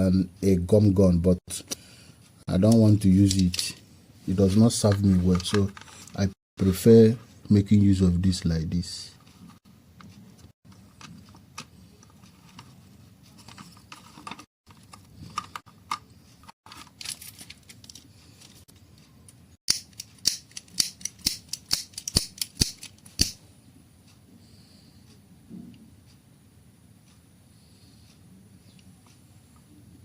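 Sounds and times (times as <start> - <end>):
parts handled clicks and rustles: 2.7 - 3.8, 4.6 - 6.2, 10.7 - 19.0, 19.7 - 23.4
sharp snipping clicks: 19.7 - 23.4.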